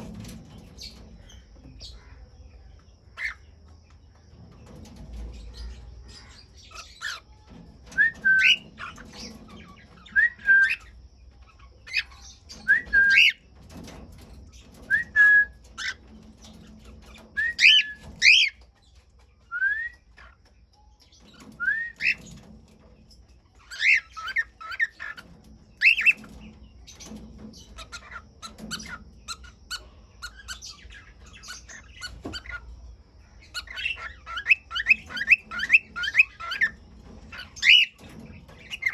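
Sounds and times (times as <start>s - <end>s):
cockatiels chirping: 3.2s - 3.5s, 5.2s - 14.0s, 14.6s - 18.7s, 19.9s - 20.5s, 21.2s - 22.5s, 23.5s - 32.7s, 33.4s - 38.9s.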